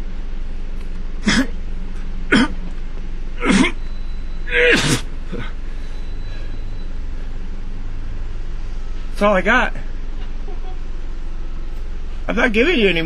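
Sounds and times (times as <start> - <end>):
man hacking and coughing: 1.2 - 1.6, 2.3 - 2.7, 3.4 - 3.8, 4.5 - 5.5.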